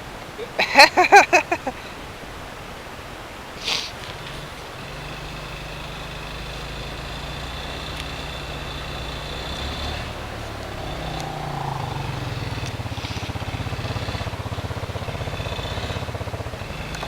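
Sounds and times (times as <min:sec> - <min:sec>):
atv engine running: 0:00.0 - 0:17.0
high whine: 0:04.4 - 0:15.2.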